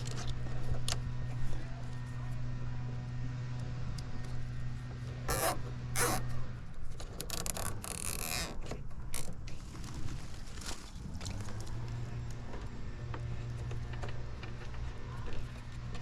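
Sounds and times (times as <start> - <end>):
scraping and creaking handling: 5.3 - 9.5.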